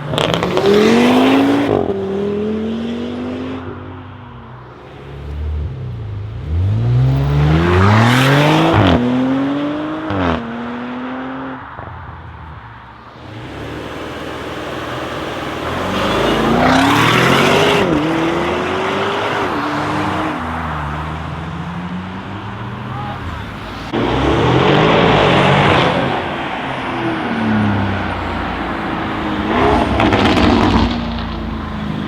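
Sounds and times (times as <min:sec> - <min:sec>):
car engine accelerating hard: 0:13.3 - 0:22.3, 0:23.5 - 0:32.0.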